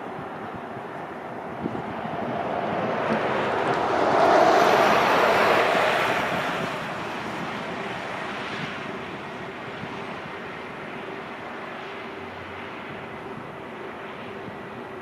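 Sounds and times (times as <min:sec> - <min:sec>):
wind buffeting microphone: 0:00.0 - 0:11.7, 0:12.4 - 0:15.0
jet airliner passing: 0:00.0 - 0:15.0.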